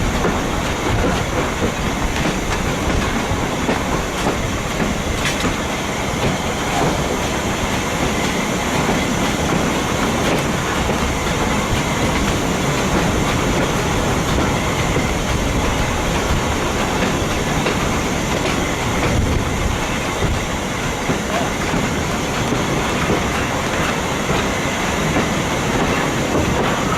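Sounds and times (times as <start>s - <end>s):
train wheels on rails: 0.0s - 26.9s.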